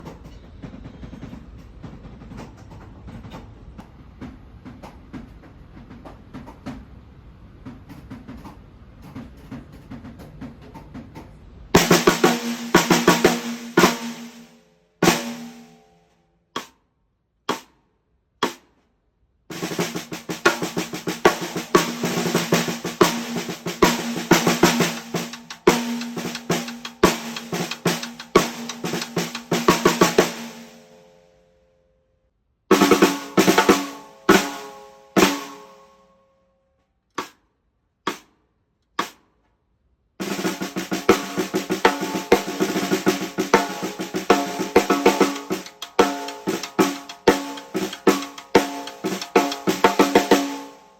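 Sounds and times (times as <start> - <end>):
snare drum being played: 11.8 - 15.8, 17.5 - 17.7, 18.4 - 18.7, 19.5 - 31.0, 32.7 - 35.8, 38.1 - 38.3, 39.0 - 39.2, 40.2 - 50.9.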